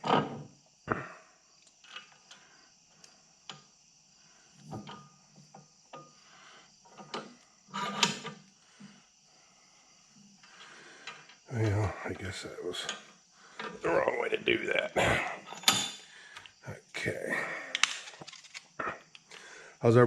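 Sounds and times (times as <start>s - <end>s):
rattling scrape: 7.7s - 8.3s.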